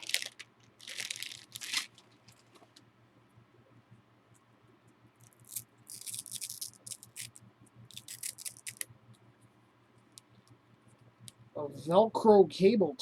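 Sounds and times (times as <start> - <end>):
plastic packaging crinkling: 0.0 - 2.8, 5.2 - 8.8.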